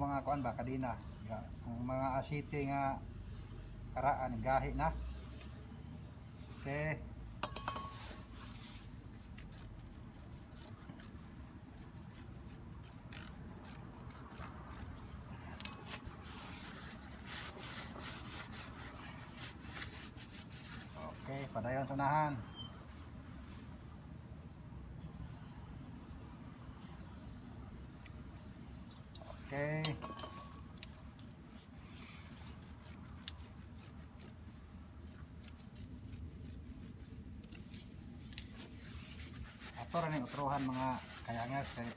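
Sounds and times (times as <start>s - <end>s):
scrubbing a drive chain: 9.1s - 15.0s, 32.2s - 34.4s, 35.0s - 41.9s.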